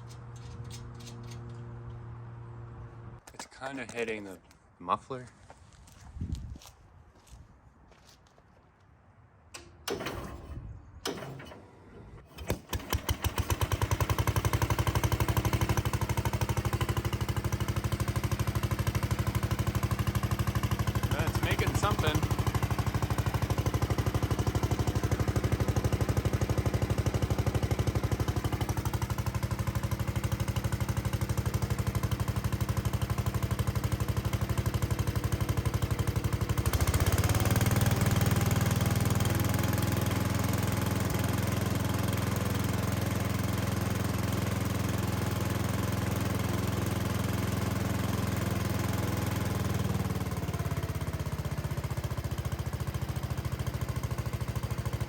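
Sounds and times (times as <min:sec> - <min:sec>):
tractor engine pulsing: 0:09.5 - 0:38.5.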